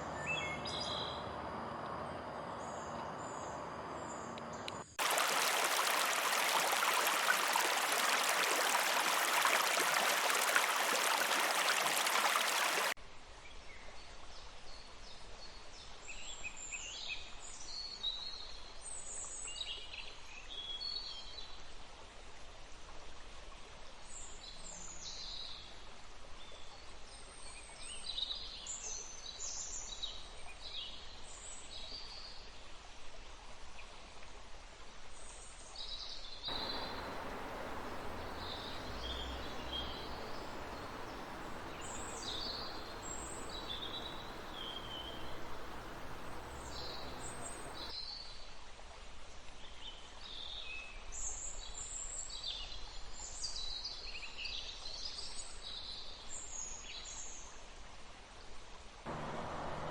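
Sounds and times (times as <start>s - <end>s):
forest birds chirping: 0.0s - 13.0s, 36.5s - 47.9s, 59.1s - 59.9s
river rushing: 1.2s - 13.0s, 36.5s - 47.9s, 59.1s - 59.9s.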